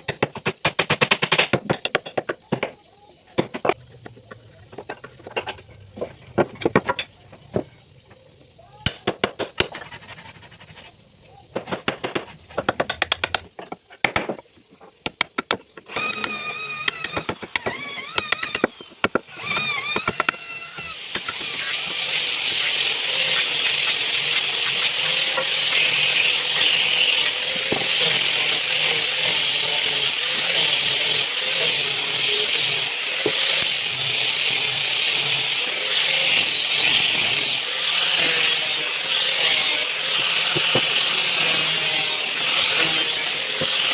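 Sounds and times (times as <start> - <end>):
scattered clicks and knocks: 0.0 - 2.8, 3.4 - 7.6, 8.8 - 10.0, 11.5 - 20.4.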